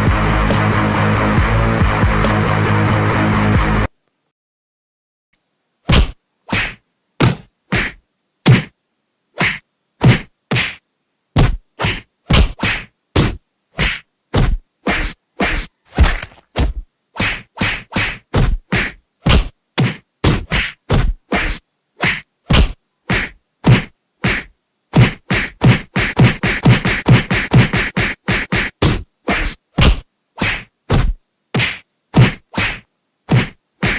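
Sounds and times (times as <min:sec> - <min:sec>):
short whacking hits: 0:05.9 - 0:08.7, 0:09.4 - 0:10.8, 0:11.4 - 0:33.9.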